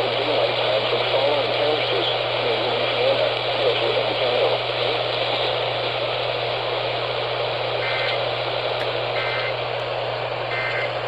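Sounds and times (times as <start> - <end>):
radio static hiss: 0.0 - 11.0
warbling data bursts: 7.7 - 8.3, 9.1 - 9.6.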